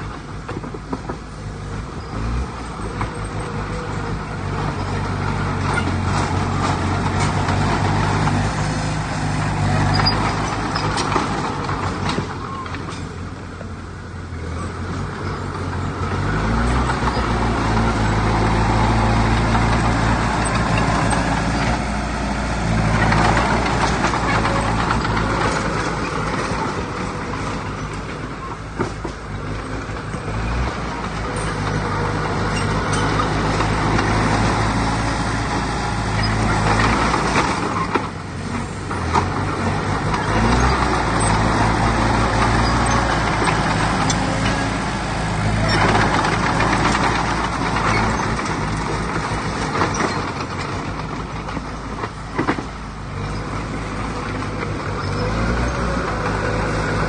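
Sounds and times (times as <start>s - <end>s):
heavy diesel machinery running: 0.0s - 57.0s.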